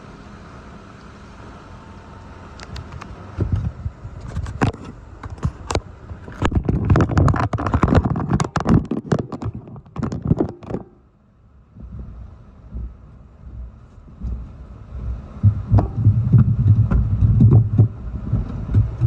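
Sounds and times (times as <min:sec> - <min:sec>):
wind gusts on microphone: 0:02.9 - 0:10.6
rain squalls crackling and thumping: 0:03.4 - 0:10.9, 0:11.8 - 0:19.0.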